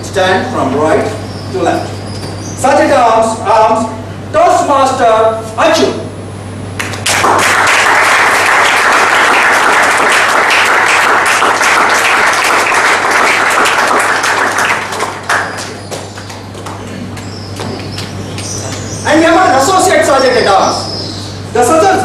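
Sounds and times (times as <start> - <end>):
steady low hum: 0.0 - 22.0
audience applauding: 6.8 - 18.2.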